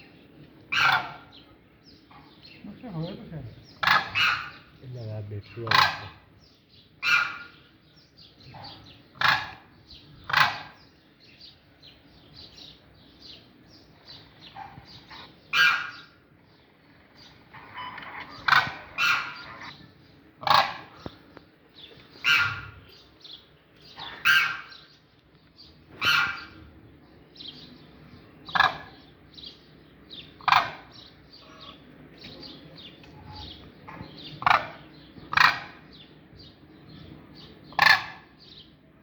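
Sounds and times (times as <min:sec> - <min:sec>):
cranes calling harshly: 0:00.7 - 0:01.4, 0:02.6 - 0:04.8, 0:07.0 - 0:07.8, 0:08.5 - 0:10.9, 0:14.1 - 0:16.2, 0:16.8 - 0:21.3, 0:22.1 - 0:22.9, 0:24.0 - 0:24.9, 0:25.9 - 0:26.6, 0:30.2 - 0:31.9, 0:33.0 - 0:36.0, 0:37.4 - 0:38.6.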